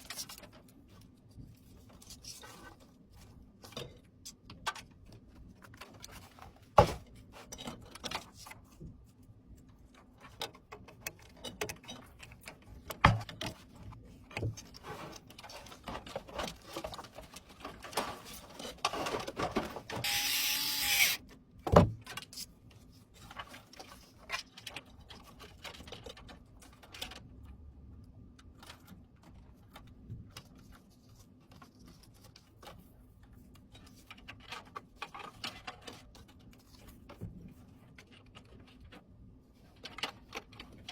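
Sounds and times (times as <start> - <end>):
computer parts clicking and knocking: 10.1 - 14.8.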